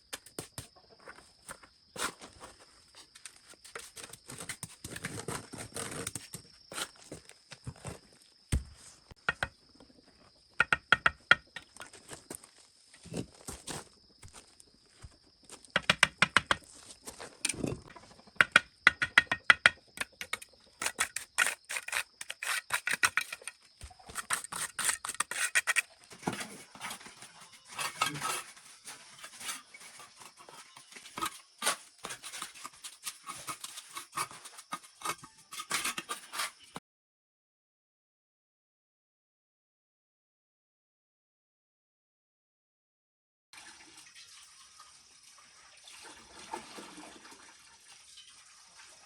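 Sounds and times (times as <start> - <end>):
sharp clicking and scraping: 18.4 - 36.8.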